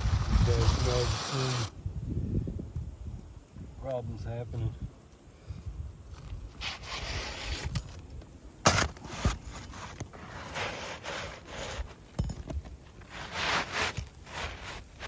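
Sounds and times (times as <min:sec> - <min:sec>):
scraping on roof shingles: 0:08.6 - 0:15.0.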